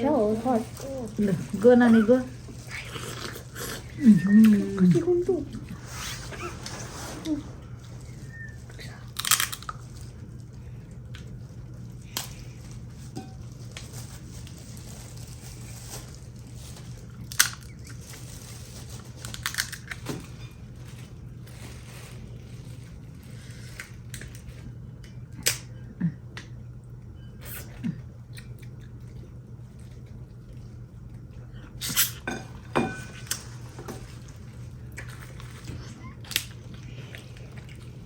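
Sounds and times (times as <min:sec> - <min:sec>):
crab shells cracking: 0:09.1 - 0:10.2, 0:17.2 - 0:18.3, 0:19.2 - 0:20.1, 0:36.2 - 0:37.4.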